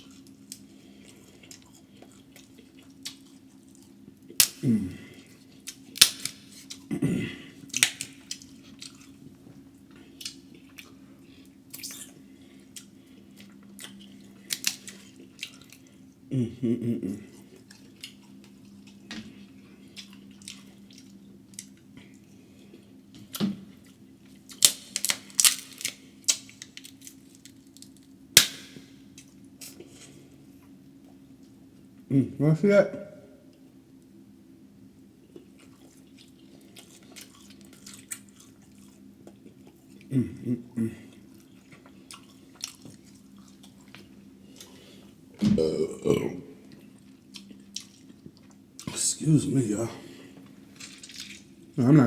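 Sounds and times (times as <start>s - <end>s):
wet chewing and lip smacking: 0.0s - 4.6s, 7.7s - 16.1s, 17.4s - 28.0s, 35.2s - 40.1s, 41.1s - 45.2s, 46.6s - 49.0s
faint steady hum: 0.0s - 52.0s.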